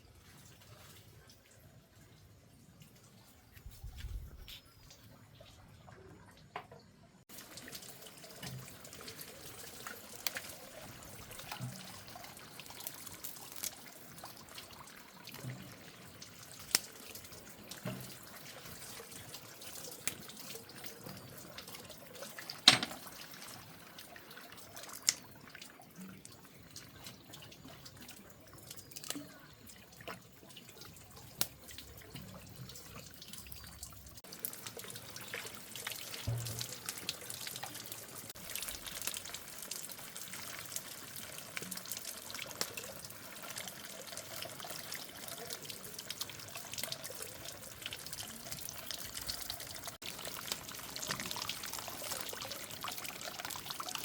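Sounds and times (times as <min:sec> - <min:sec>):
water running and splashing: 0:07.3 - 0:54.0
knocks and clinks: 0:22.7 - 0:23.1.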